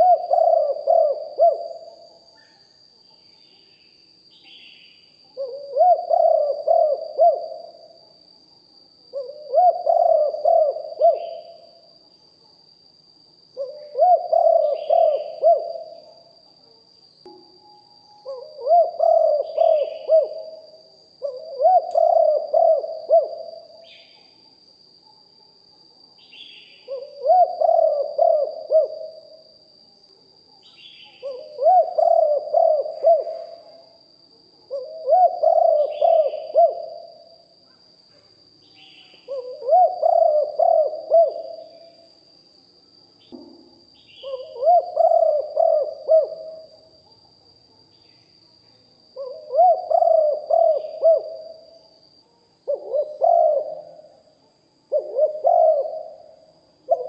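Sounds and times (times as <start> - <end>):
dove cooing: 0.0 - 2.2, 5.3 - 8.0, 9.1 - 11.8, 13.6 - 16.2, 18.2 - 24.1, 26.8 - 29.4, 30.9 - 33.9, 34.6 - 37.4, 38.8 - 42.0, 44.2 - 46.8, 49.2 - 51.8, 52.6 - 54.2, 54.9 - 57.0
faint high whine: 0.0 - 57.0.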